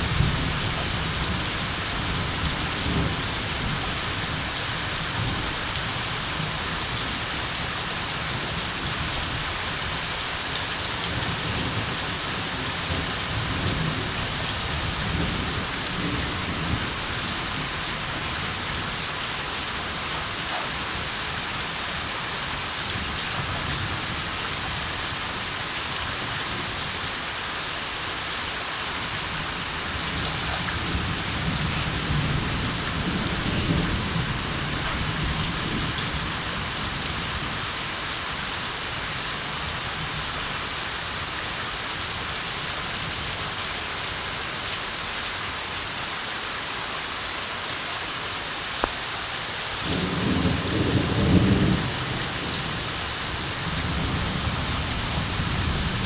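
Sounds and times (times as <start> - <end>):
heavy rain falling: 0.0 - 56.0
distant thunder rumbling: 49.8 - 56.0.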